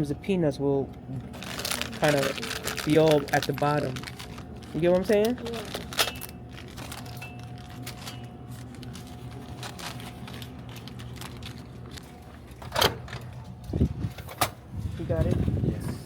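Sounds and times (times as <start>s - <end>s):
snack packets rustling: 1.2s - 12.6s.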